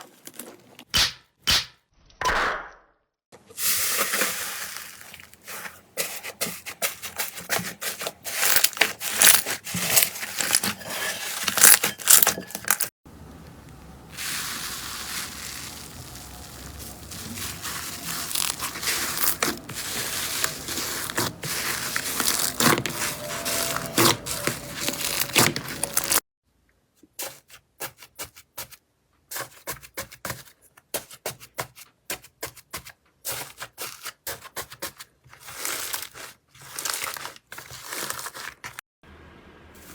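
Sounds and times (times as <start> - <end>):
slime crackling when squeezed: 8.4 - 9.4, 11.5 - 12.9, 14.2 - 26.2.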